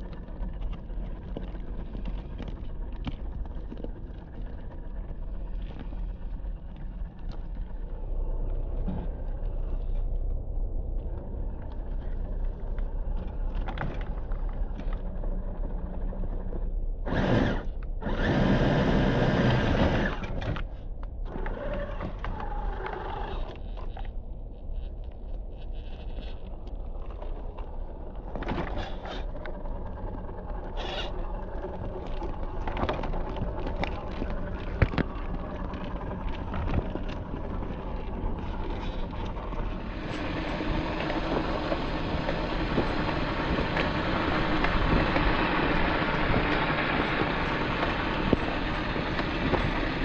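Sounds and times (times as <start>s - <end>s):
small electric motor whirring: 17.1s - 20.4s.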